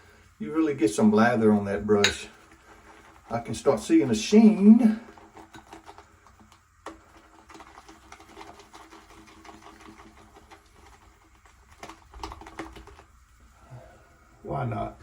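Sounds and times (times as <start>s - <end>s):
shaving brush whisking lather: 0.0s - 13.4s
brush tapping bowl: 1.1s - 11.0s.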